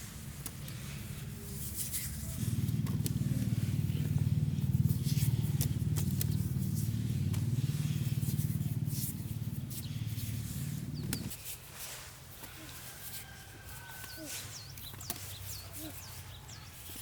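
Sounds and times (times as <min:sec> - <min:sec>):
light clicks and scrapes: 0:00.3 - 0:04.2
small engine chugging: 0:00.8 - 0:16.9.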